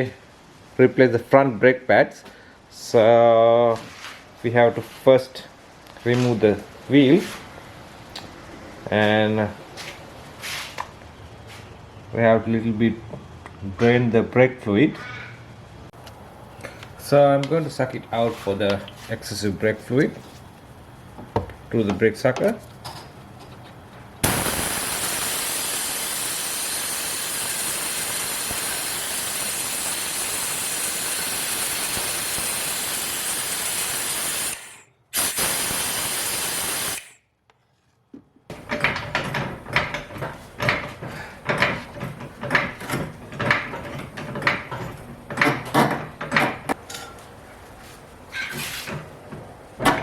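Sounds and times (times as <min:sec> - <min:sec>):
brake fluid sucker hissing: 0:23.4 - 0:37.2
tools and parts knocking: 0:38.1 - 0:47.2.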